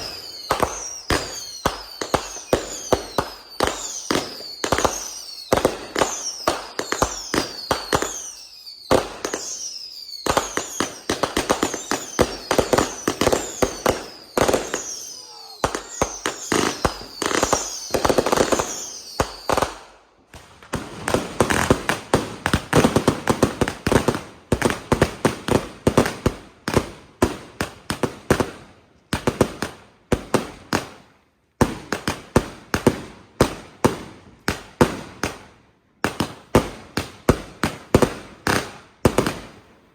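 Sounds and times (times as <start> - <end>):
falling firework whistle: 0.0 - 19.9
firework shots: 0.0 - 27.8
firework bangs and crackling: 0.0 - 39.9.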